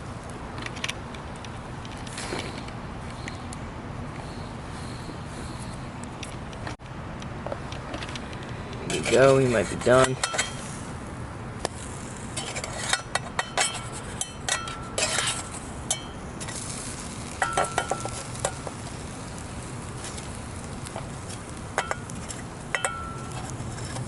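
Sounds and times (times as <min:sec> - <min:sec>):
metal utensil scraping a pan: 0:08.9 - 0:10.7, 0:12.4 - 0:16.6
faint sizzle: 0:13.8 - 0:24.0.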